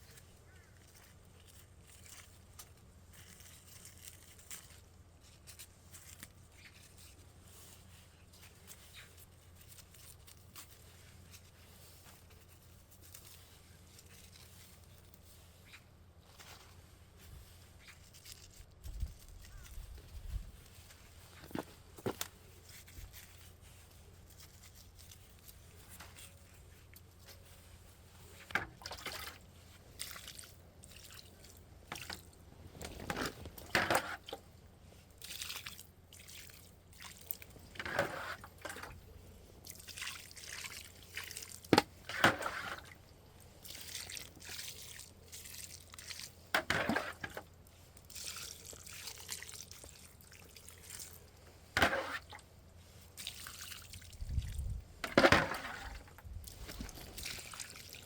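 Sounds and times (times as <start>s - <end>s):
water splashes and drips: 28.7s - 34.5s, 35.2s - 39.0s, 39.6s - 47.4s, 48.0s - 58.0s.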